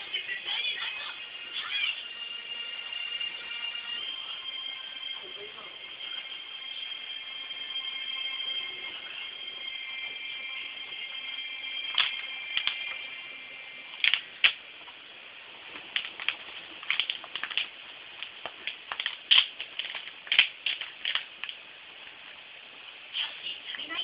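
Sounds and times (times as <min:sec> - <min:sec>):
faint high tones: 0:00.0 - 0:14.4.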